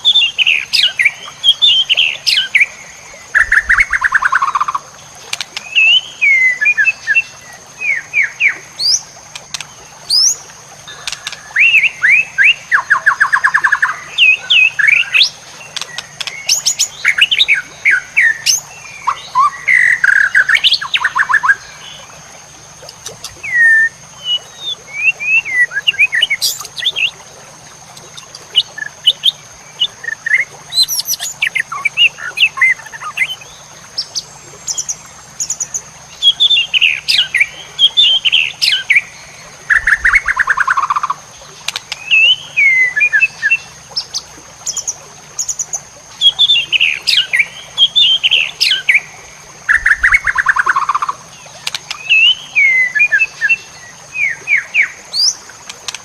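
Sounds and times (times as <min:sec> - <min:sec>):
bird singing whistles and trills: 0:22.9 - 0:27.2, 0:27.9 - 0:33.5, 0:42.0 - 0:44.1, 0:46.2 - 0:49.0, 0:51.9 - 0:55.4.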